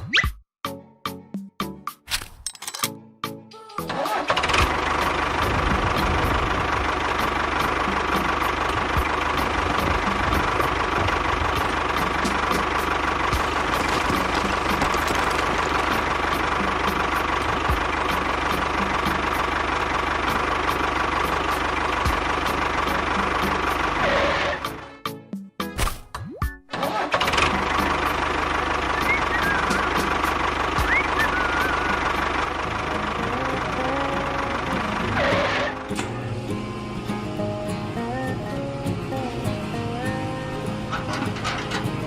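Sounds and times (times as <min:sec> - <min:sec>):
engine starting and running: 0:03.8 - 0:24.8, 0:26.7 - 0:42.0
fast engine ticking: 0:04.0 - 0:24.6, 0:27.0 - 0:35.9.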